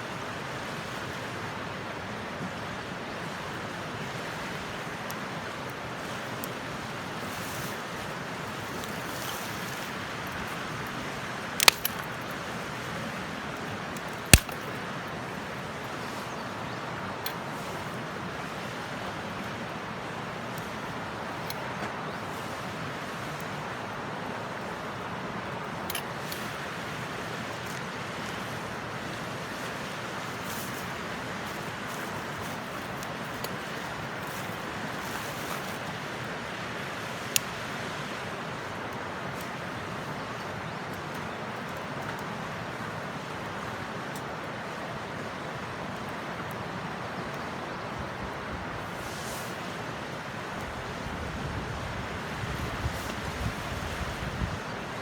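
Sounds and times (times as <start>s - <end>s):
wood fire crackling and popping: 8.1s - 12.9s, 13.5s - 15.6s, 37.2s - 37.7s.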